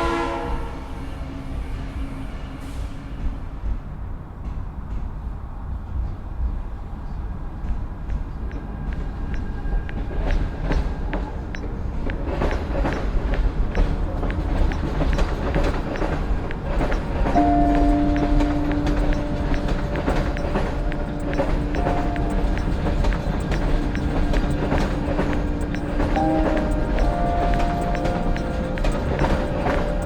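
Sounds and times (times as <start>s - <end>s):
train horn blast: 0.0s - 3.2s
train rumbling past: 0.0s - 30.0s
wheels clacking over rail joints: 7.6s - 30.0s.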